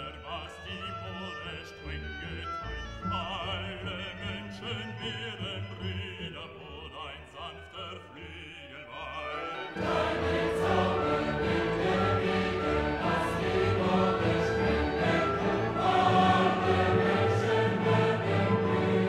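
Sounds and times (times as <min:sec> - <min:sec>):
sustained musical accompaniment: 0:00.0 - 0:19.0
operatic choral singing: 0:08.9 - 0:19.0.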